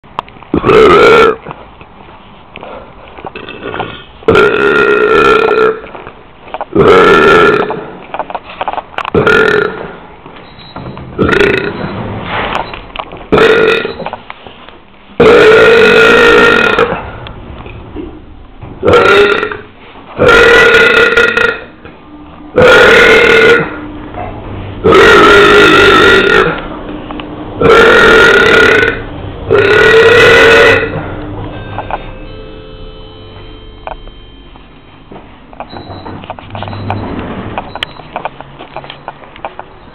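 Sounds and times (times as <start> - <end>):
loud belches: 0.5 - 1.5, 3.4 - 5.9, 6.7 - 8.0, 9.1 - 10.1, 11.2 - 12.1, 13.3 - 14.1, 15.2 - 18.1, 18.7 - 21.7, 22.5 - 23.8, 24.8 - 26.7, 27.6 - 31.2.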